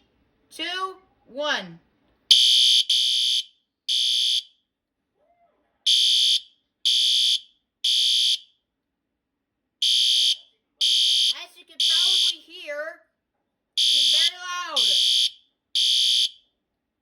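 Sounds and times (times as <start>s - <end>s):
fire alarm horn beeping: 2.3s - 4.5s, 5.9s - 8.5s, 9.8s - 12.5s, 13.8s - 16.4s.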